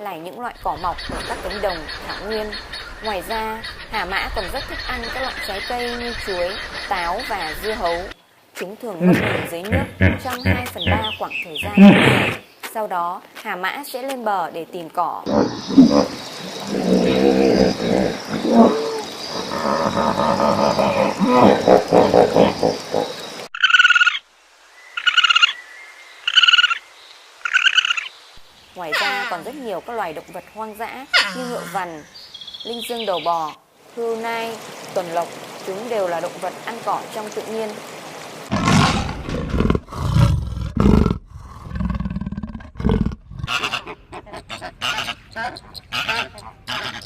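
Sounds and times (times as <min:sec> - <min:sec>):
hippopotamus grunting and honking: 0:09.0 - 0:12.4, 0:15.3 - 0:23.4, 0:38.5 - 0:47.0.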